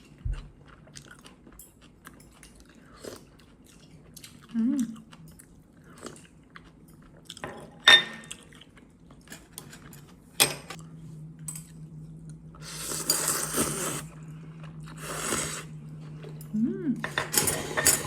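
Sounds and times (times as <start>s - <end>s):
utensils clinking against dishes: 6.8s - 8.4s, 9.2s - 10.8s, 16.4s - 18.0s.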